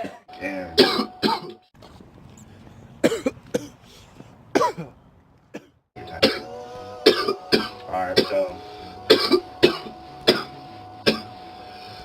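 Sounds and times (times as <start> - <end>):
person coughing harshly: 0.0 - 1.7, 3.0 - 3.8, 4.5 - 8.5, 9.1 - 11.3.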